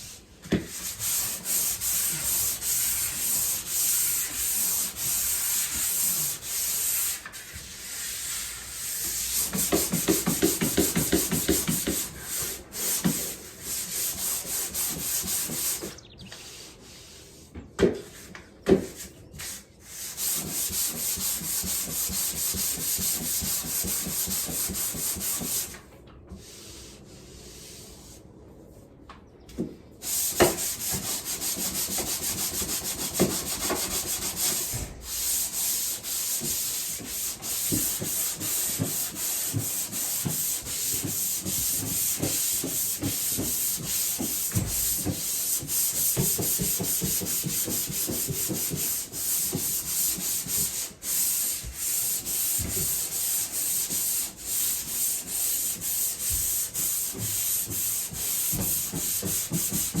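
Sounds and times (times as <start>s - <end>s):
hand sanding scraping strokes: 0.0s - 25.8s, 26.4s - 28.3s, 30.0s - 60.0s.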